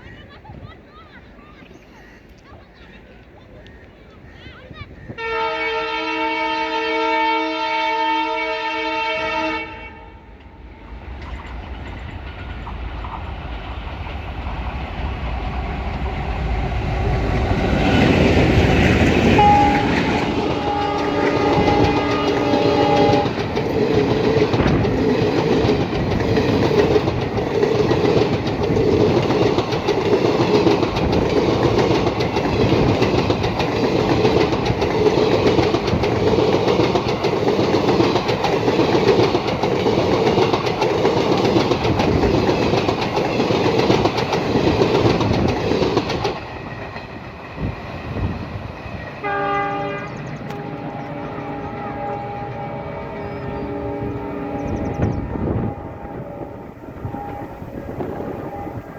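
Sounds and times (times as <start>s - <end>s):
locomotive horn: 5.2s - 10.4s, 17.8s - 23.7s, 49.2s - 58.9s
locomotive engine: 10.2s - 58.9s
wheels clacking over rail joints: 10.4s - 49.4s.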